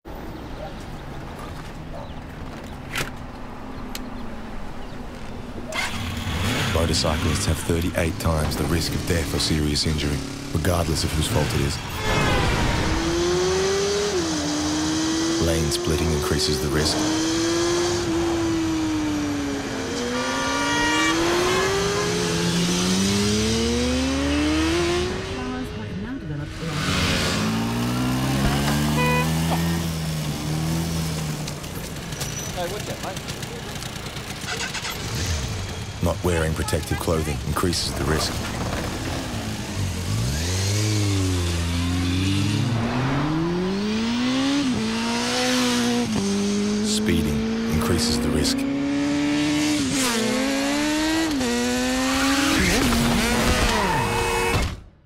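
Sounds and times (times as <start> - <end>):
motorcycle engine revving: 4.8 - 54.9.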